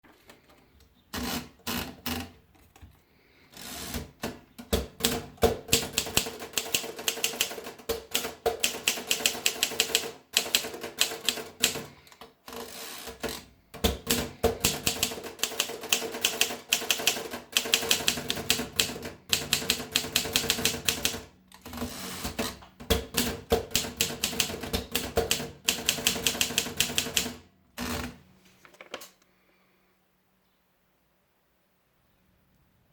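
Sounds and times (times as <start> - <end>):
manual typewriter typing: 3.6 - 28.2.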